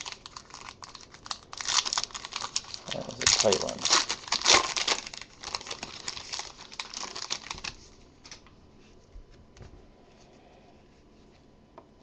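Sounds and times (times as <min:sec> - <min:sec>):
card wrapper crinkling: 0:00.0 - 0:08.5.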